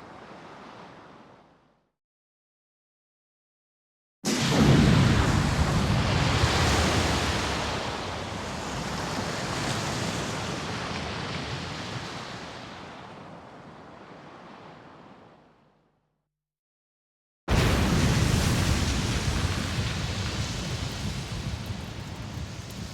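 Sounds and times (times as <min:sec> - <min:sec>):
rush of noise with deep rumble: 0:17.5 - 0:22.9.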